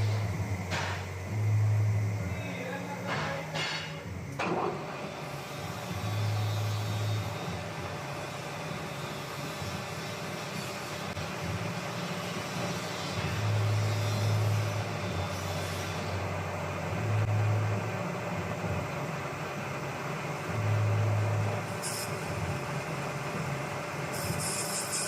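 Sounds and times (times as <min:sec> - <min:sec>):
lathe machining: 0:00.0 - 0:25.0.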